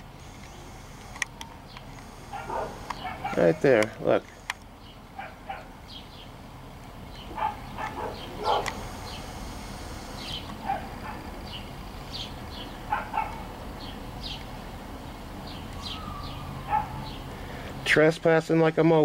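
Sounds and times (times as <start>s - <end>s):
low background hum: 0.0s - 19.0s
dog barking: 2.3s - 3.6s, 5.2s - 5.7s, 7.3s - 8.8s, 10.6s - 11.3s, 12.9s - 13.4s, 16.6s - 17.1s.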